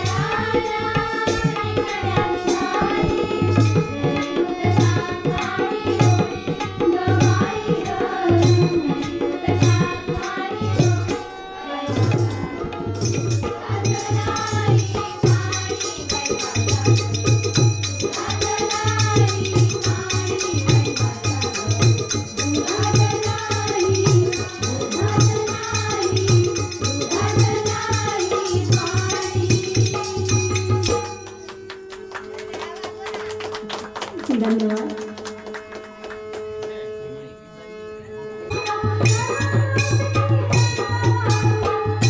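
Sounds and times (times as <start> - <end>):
devotional song melody: 0.0 - 32.8
jingling percussion: 0.0 - 36.8, 38.4 - 42.0
hand drum rhythm: 12.0 - 31.8.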